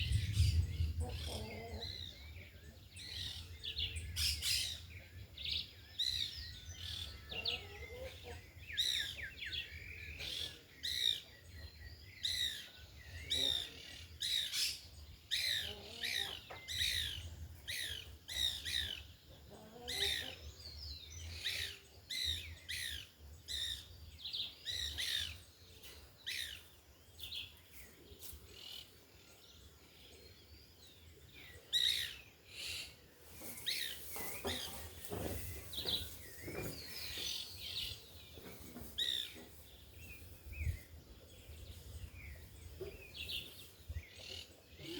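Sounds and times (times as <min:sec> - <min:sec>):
wind rumble: 0:00.0 - 0:02.4
small birds chirping: 0:00.0 - 0:44.9.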